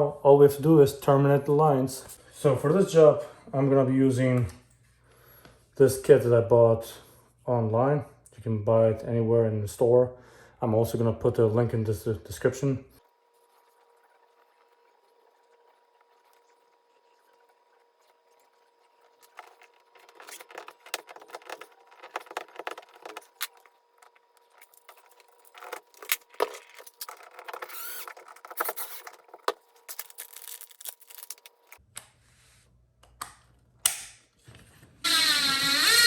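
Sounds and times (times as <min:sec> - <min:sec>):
cable tool clicks and snaps: 0:33.0 - 0:34.2.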